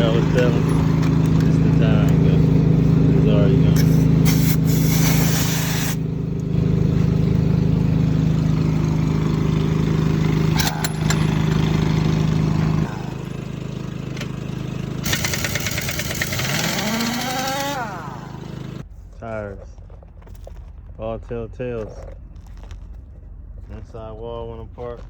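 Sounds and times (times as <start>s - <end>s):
engine humming: 0.0s - 18.9s
loud hissing rattling noise: 3.6s - 6.1s, 14.1s - 18.8s.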